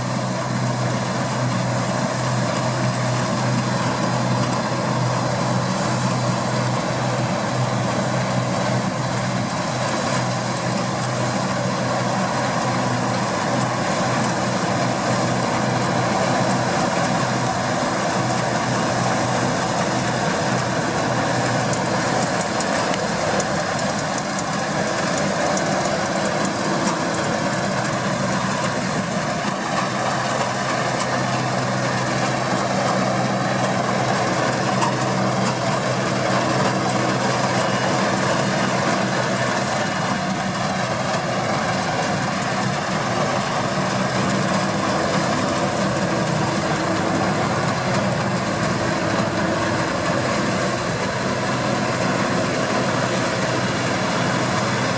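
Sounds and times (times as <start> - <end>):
combine harvester engine drone: 0.0 - 54.9.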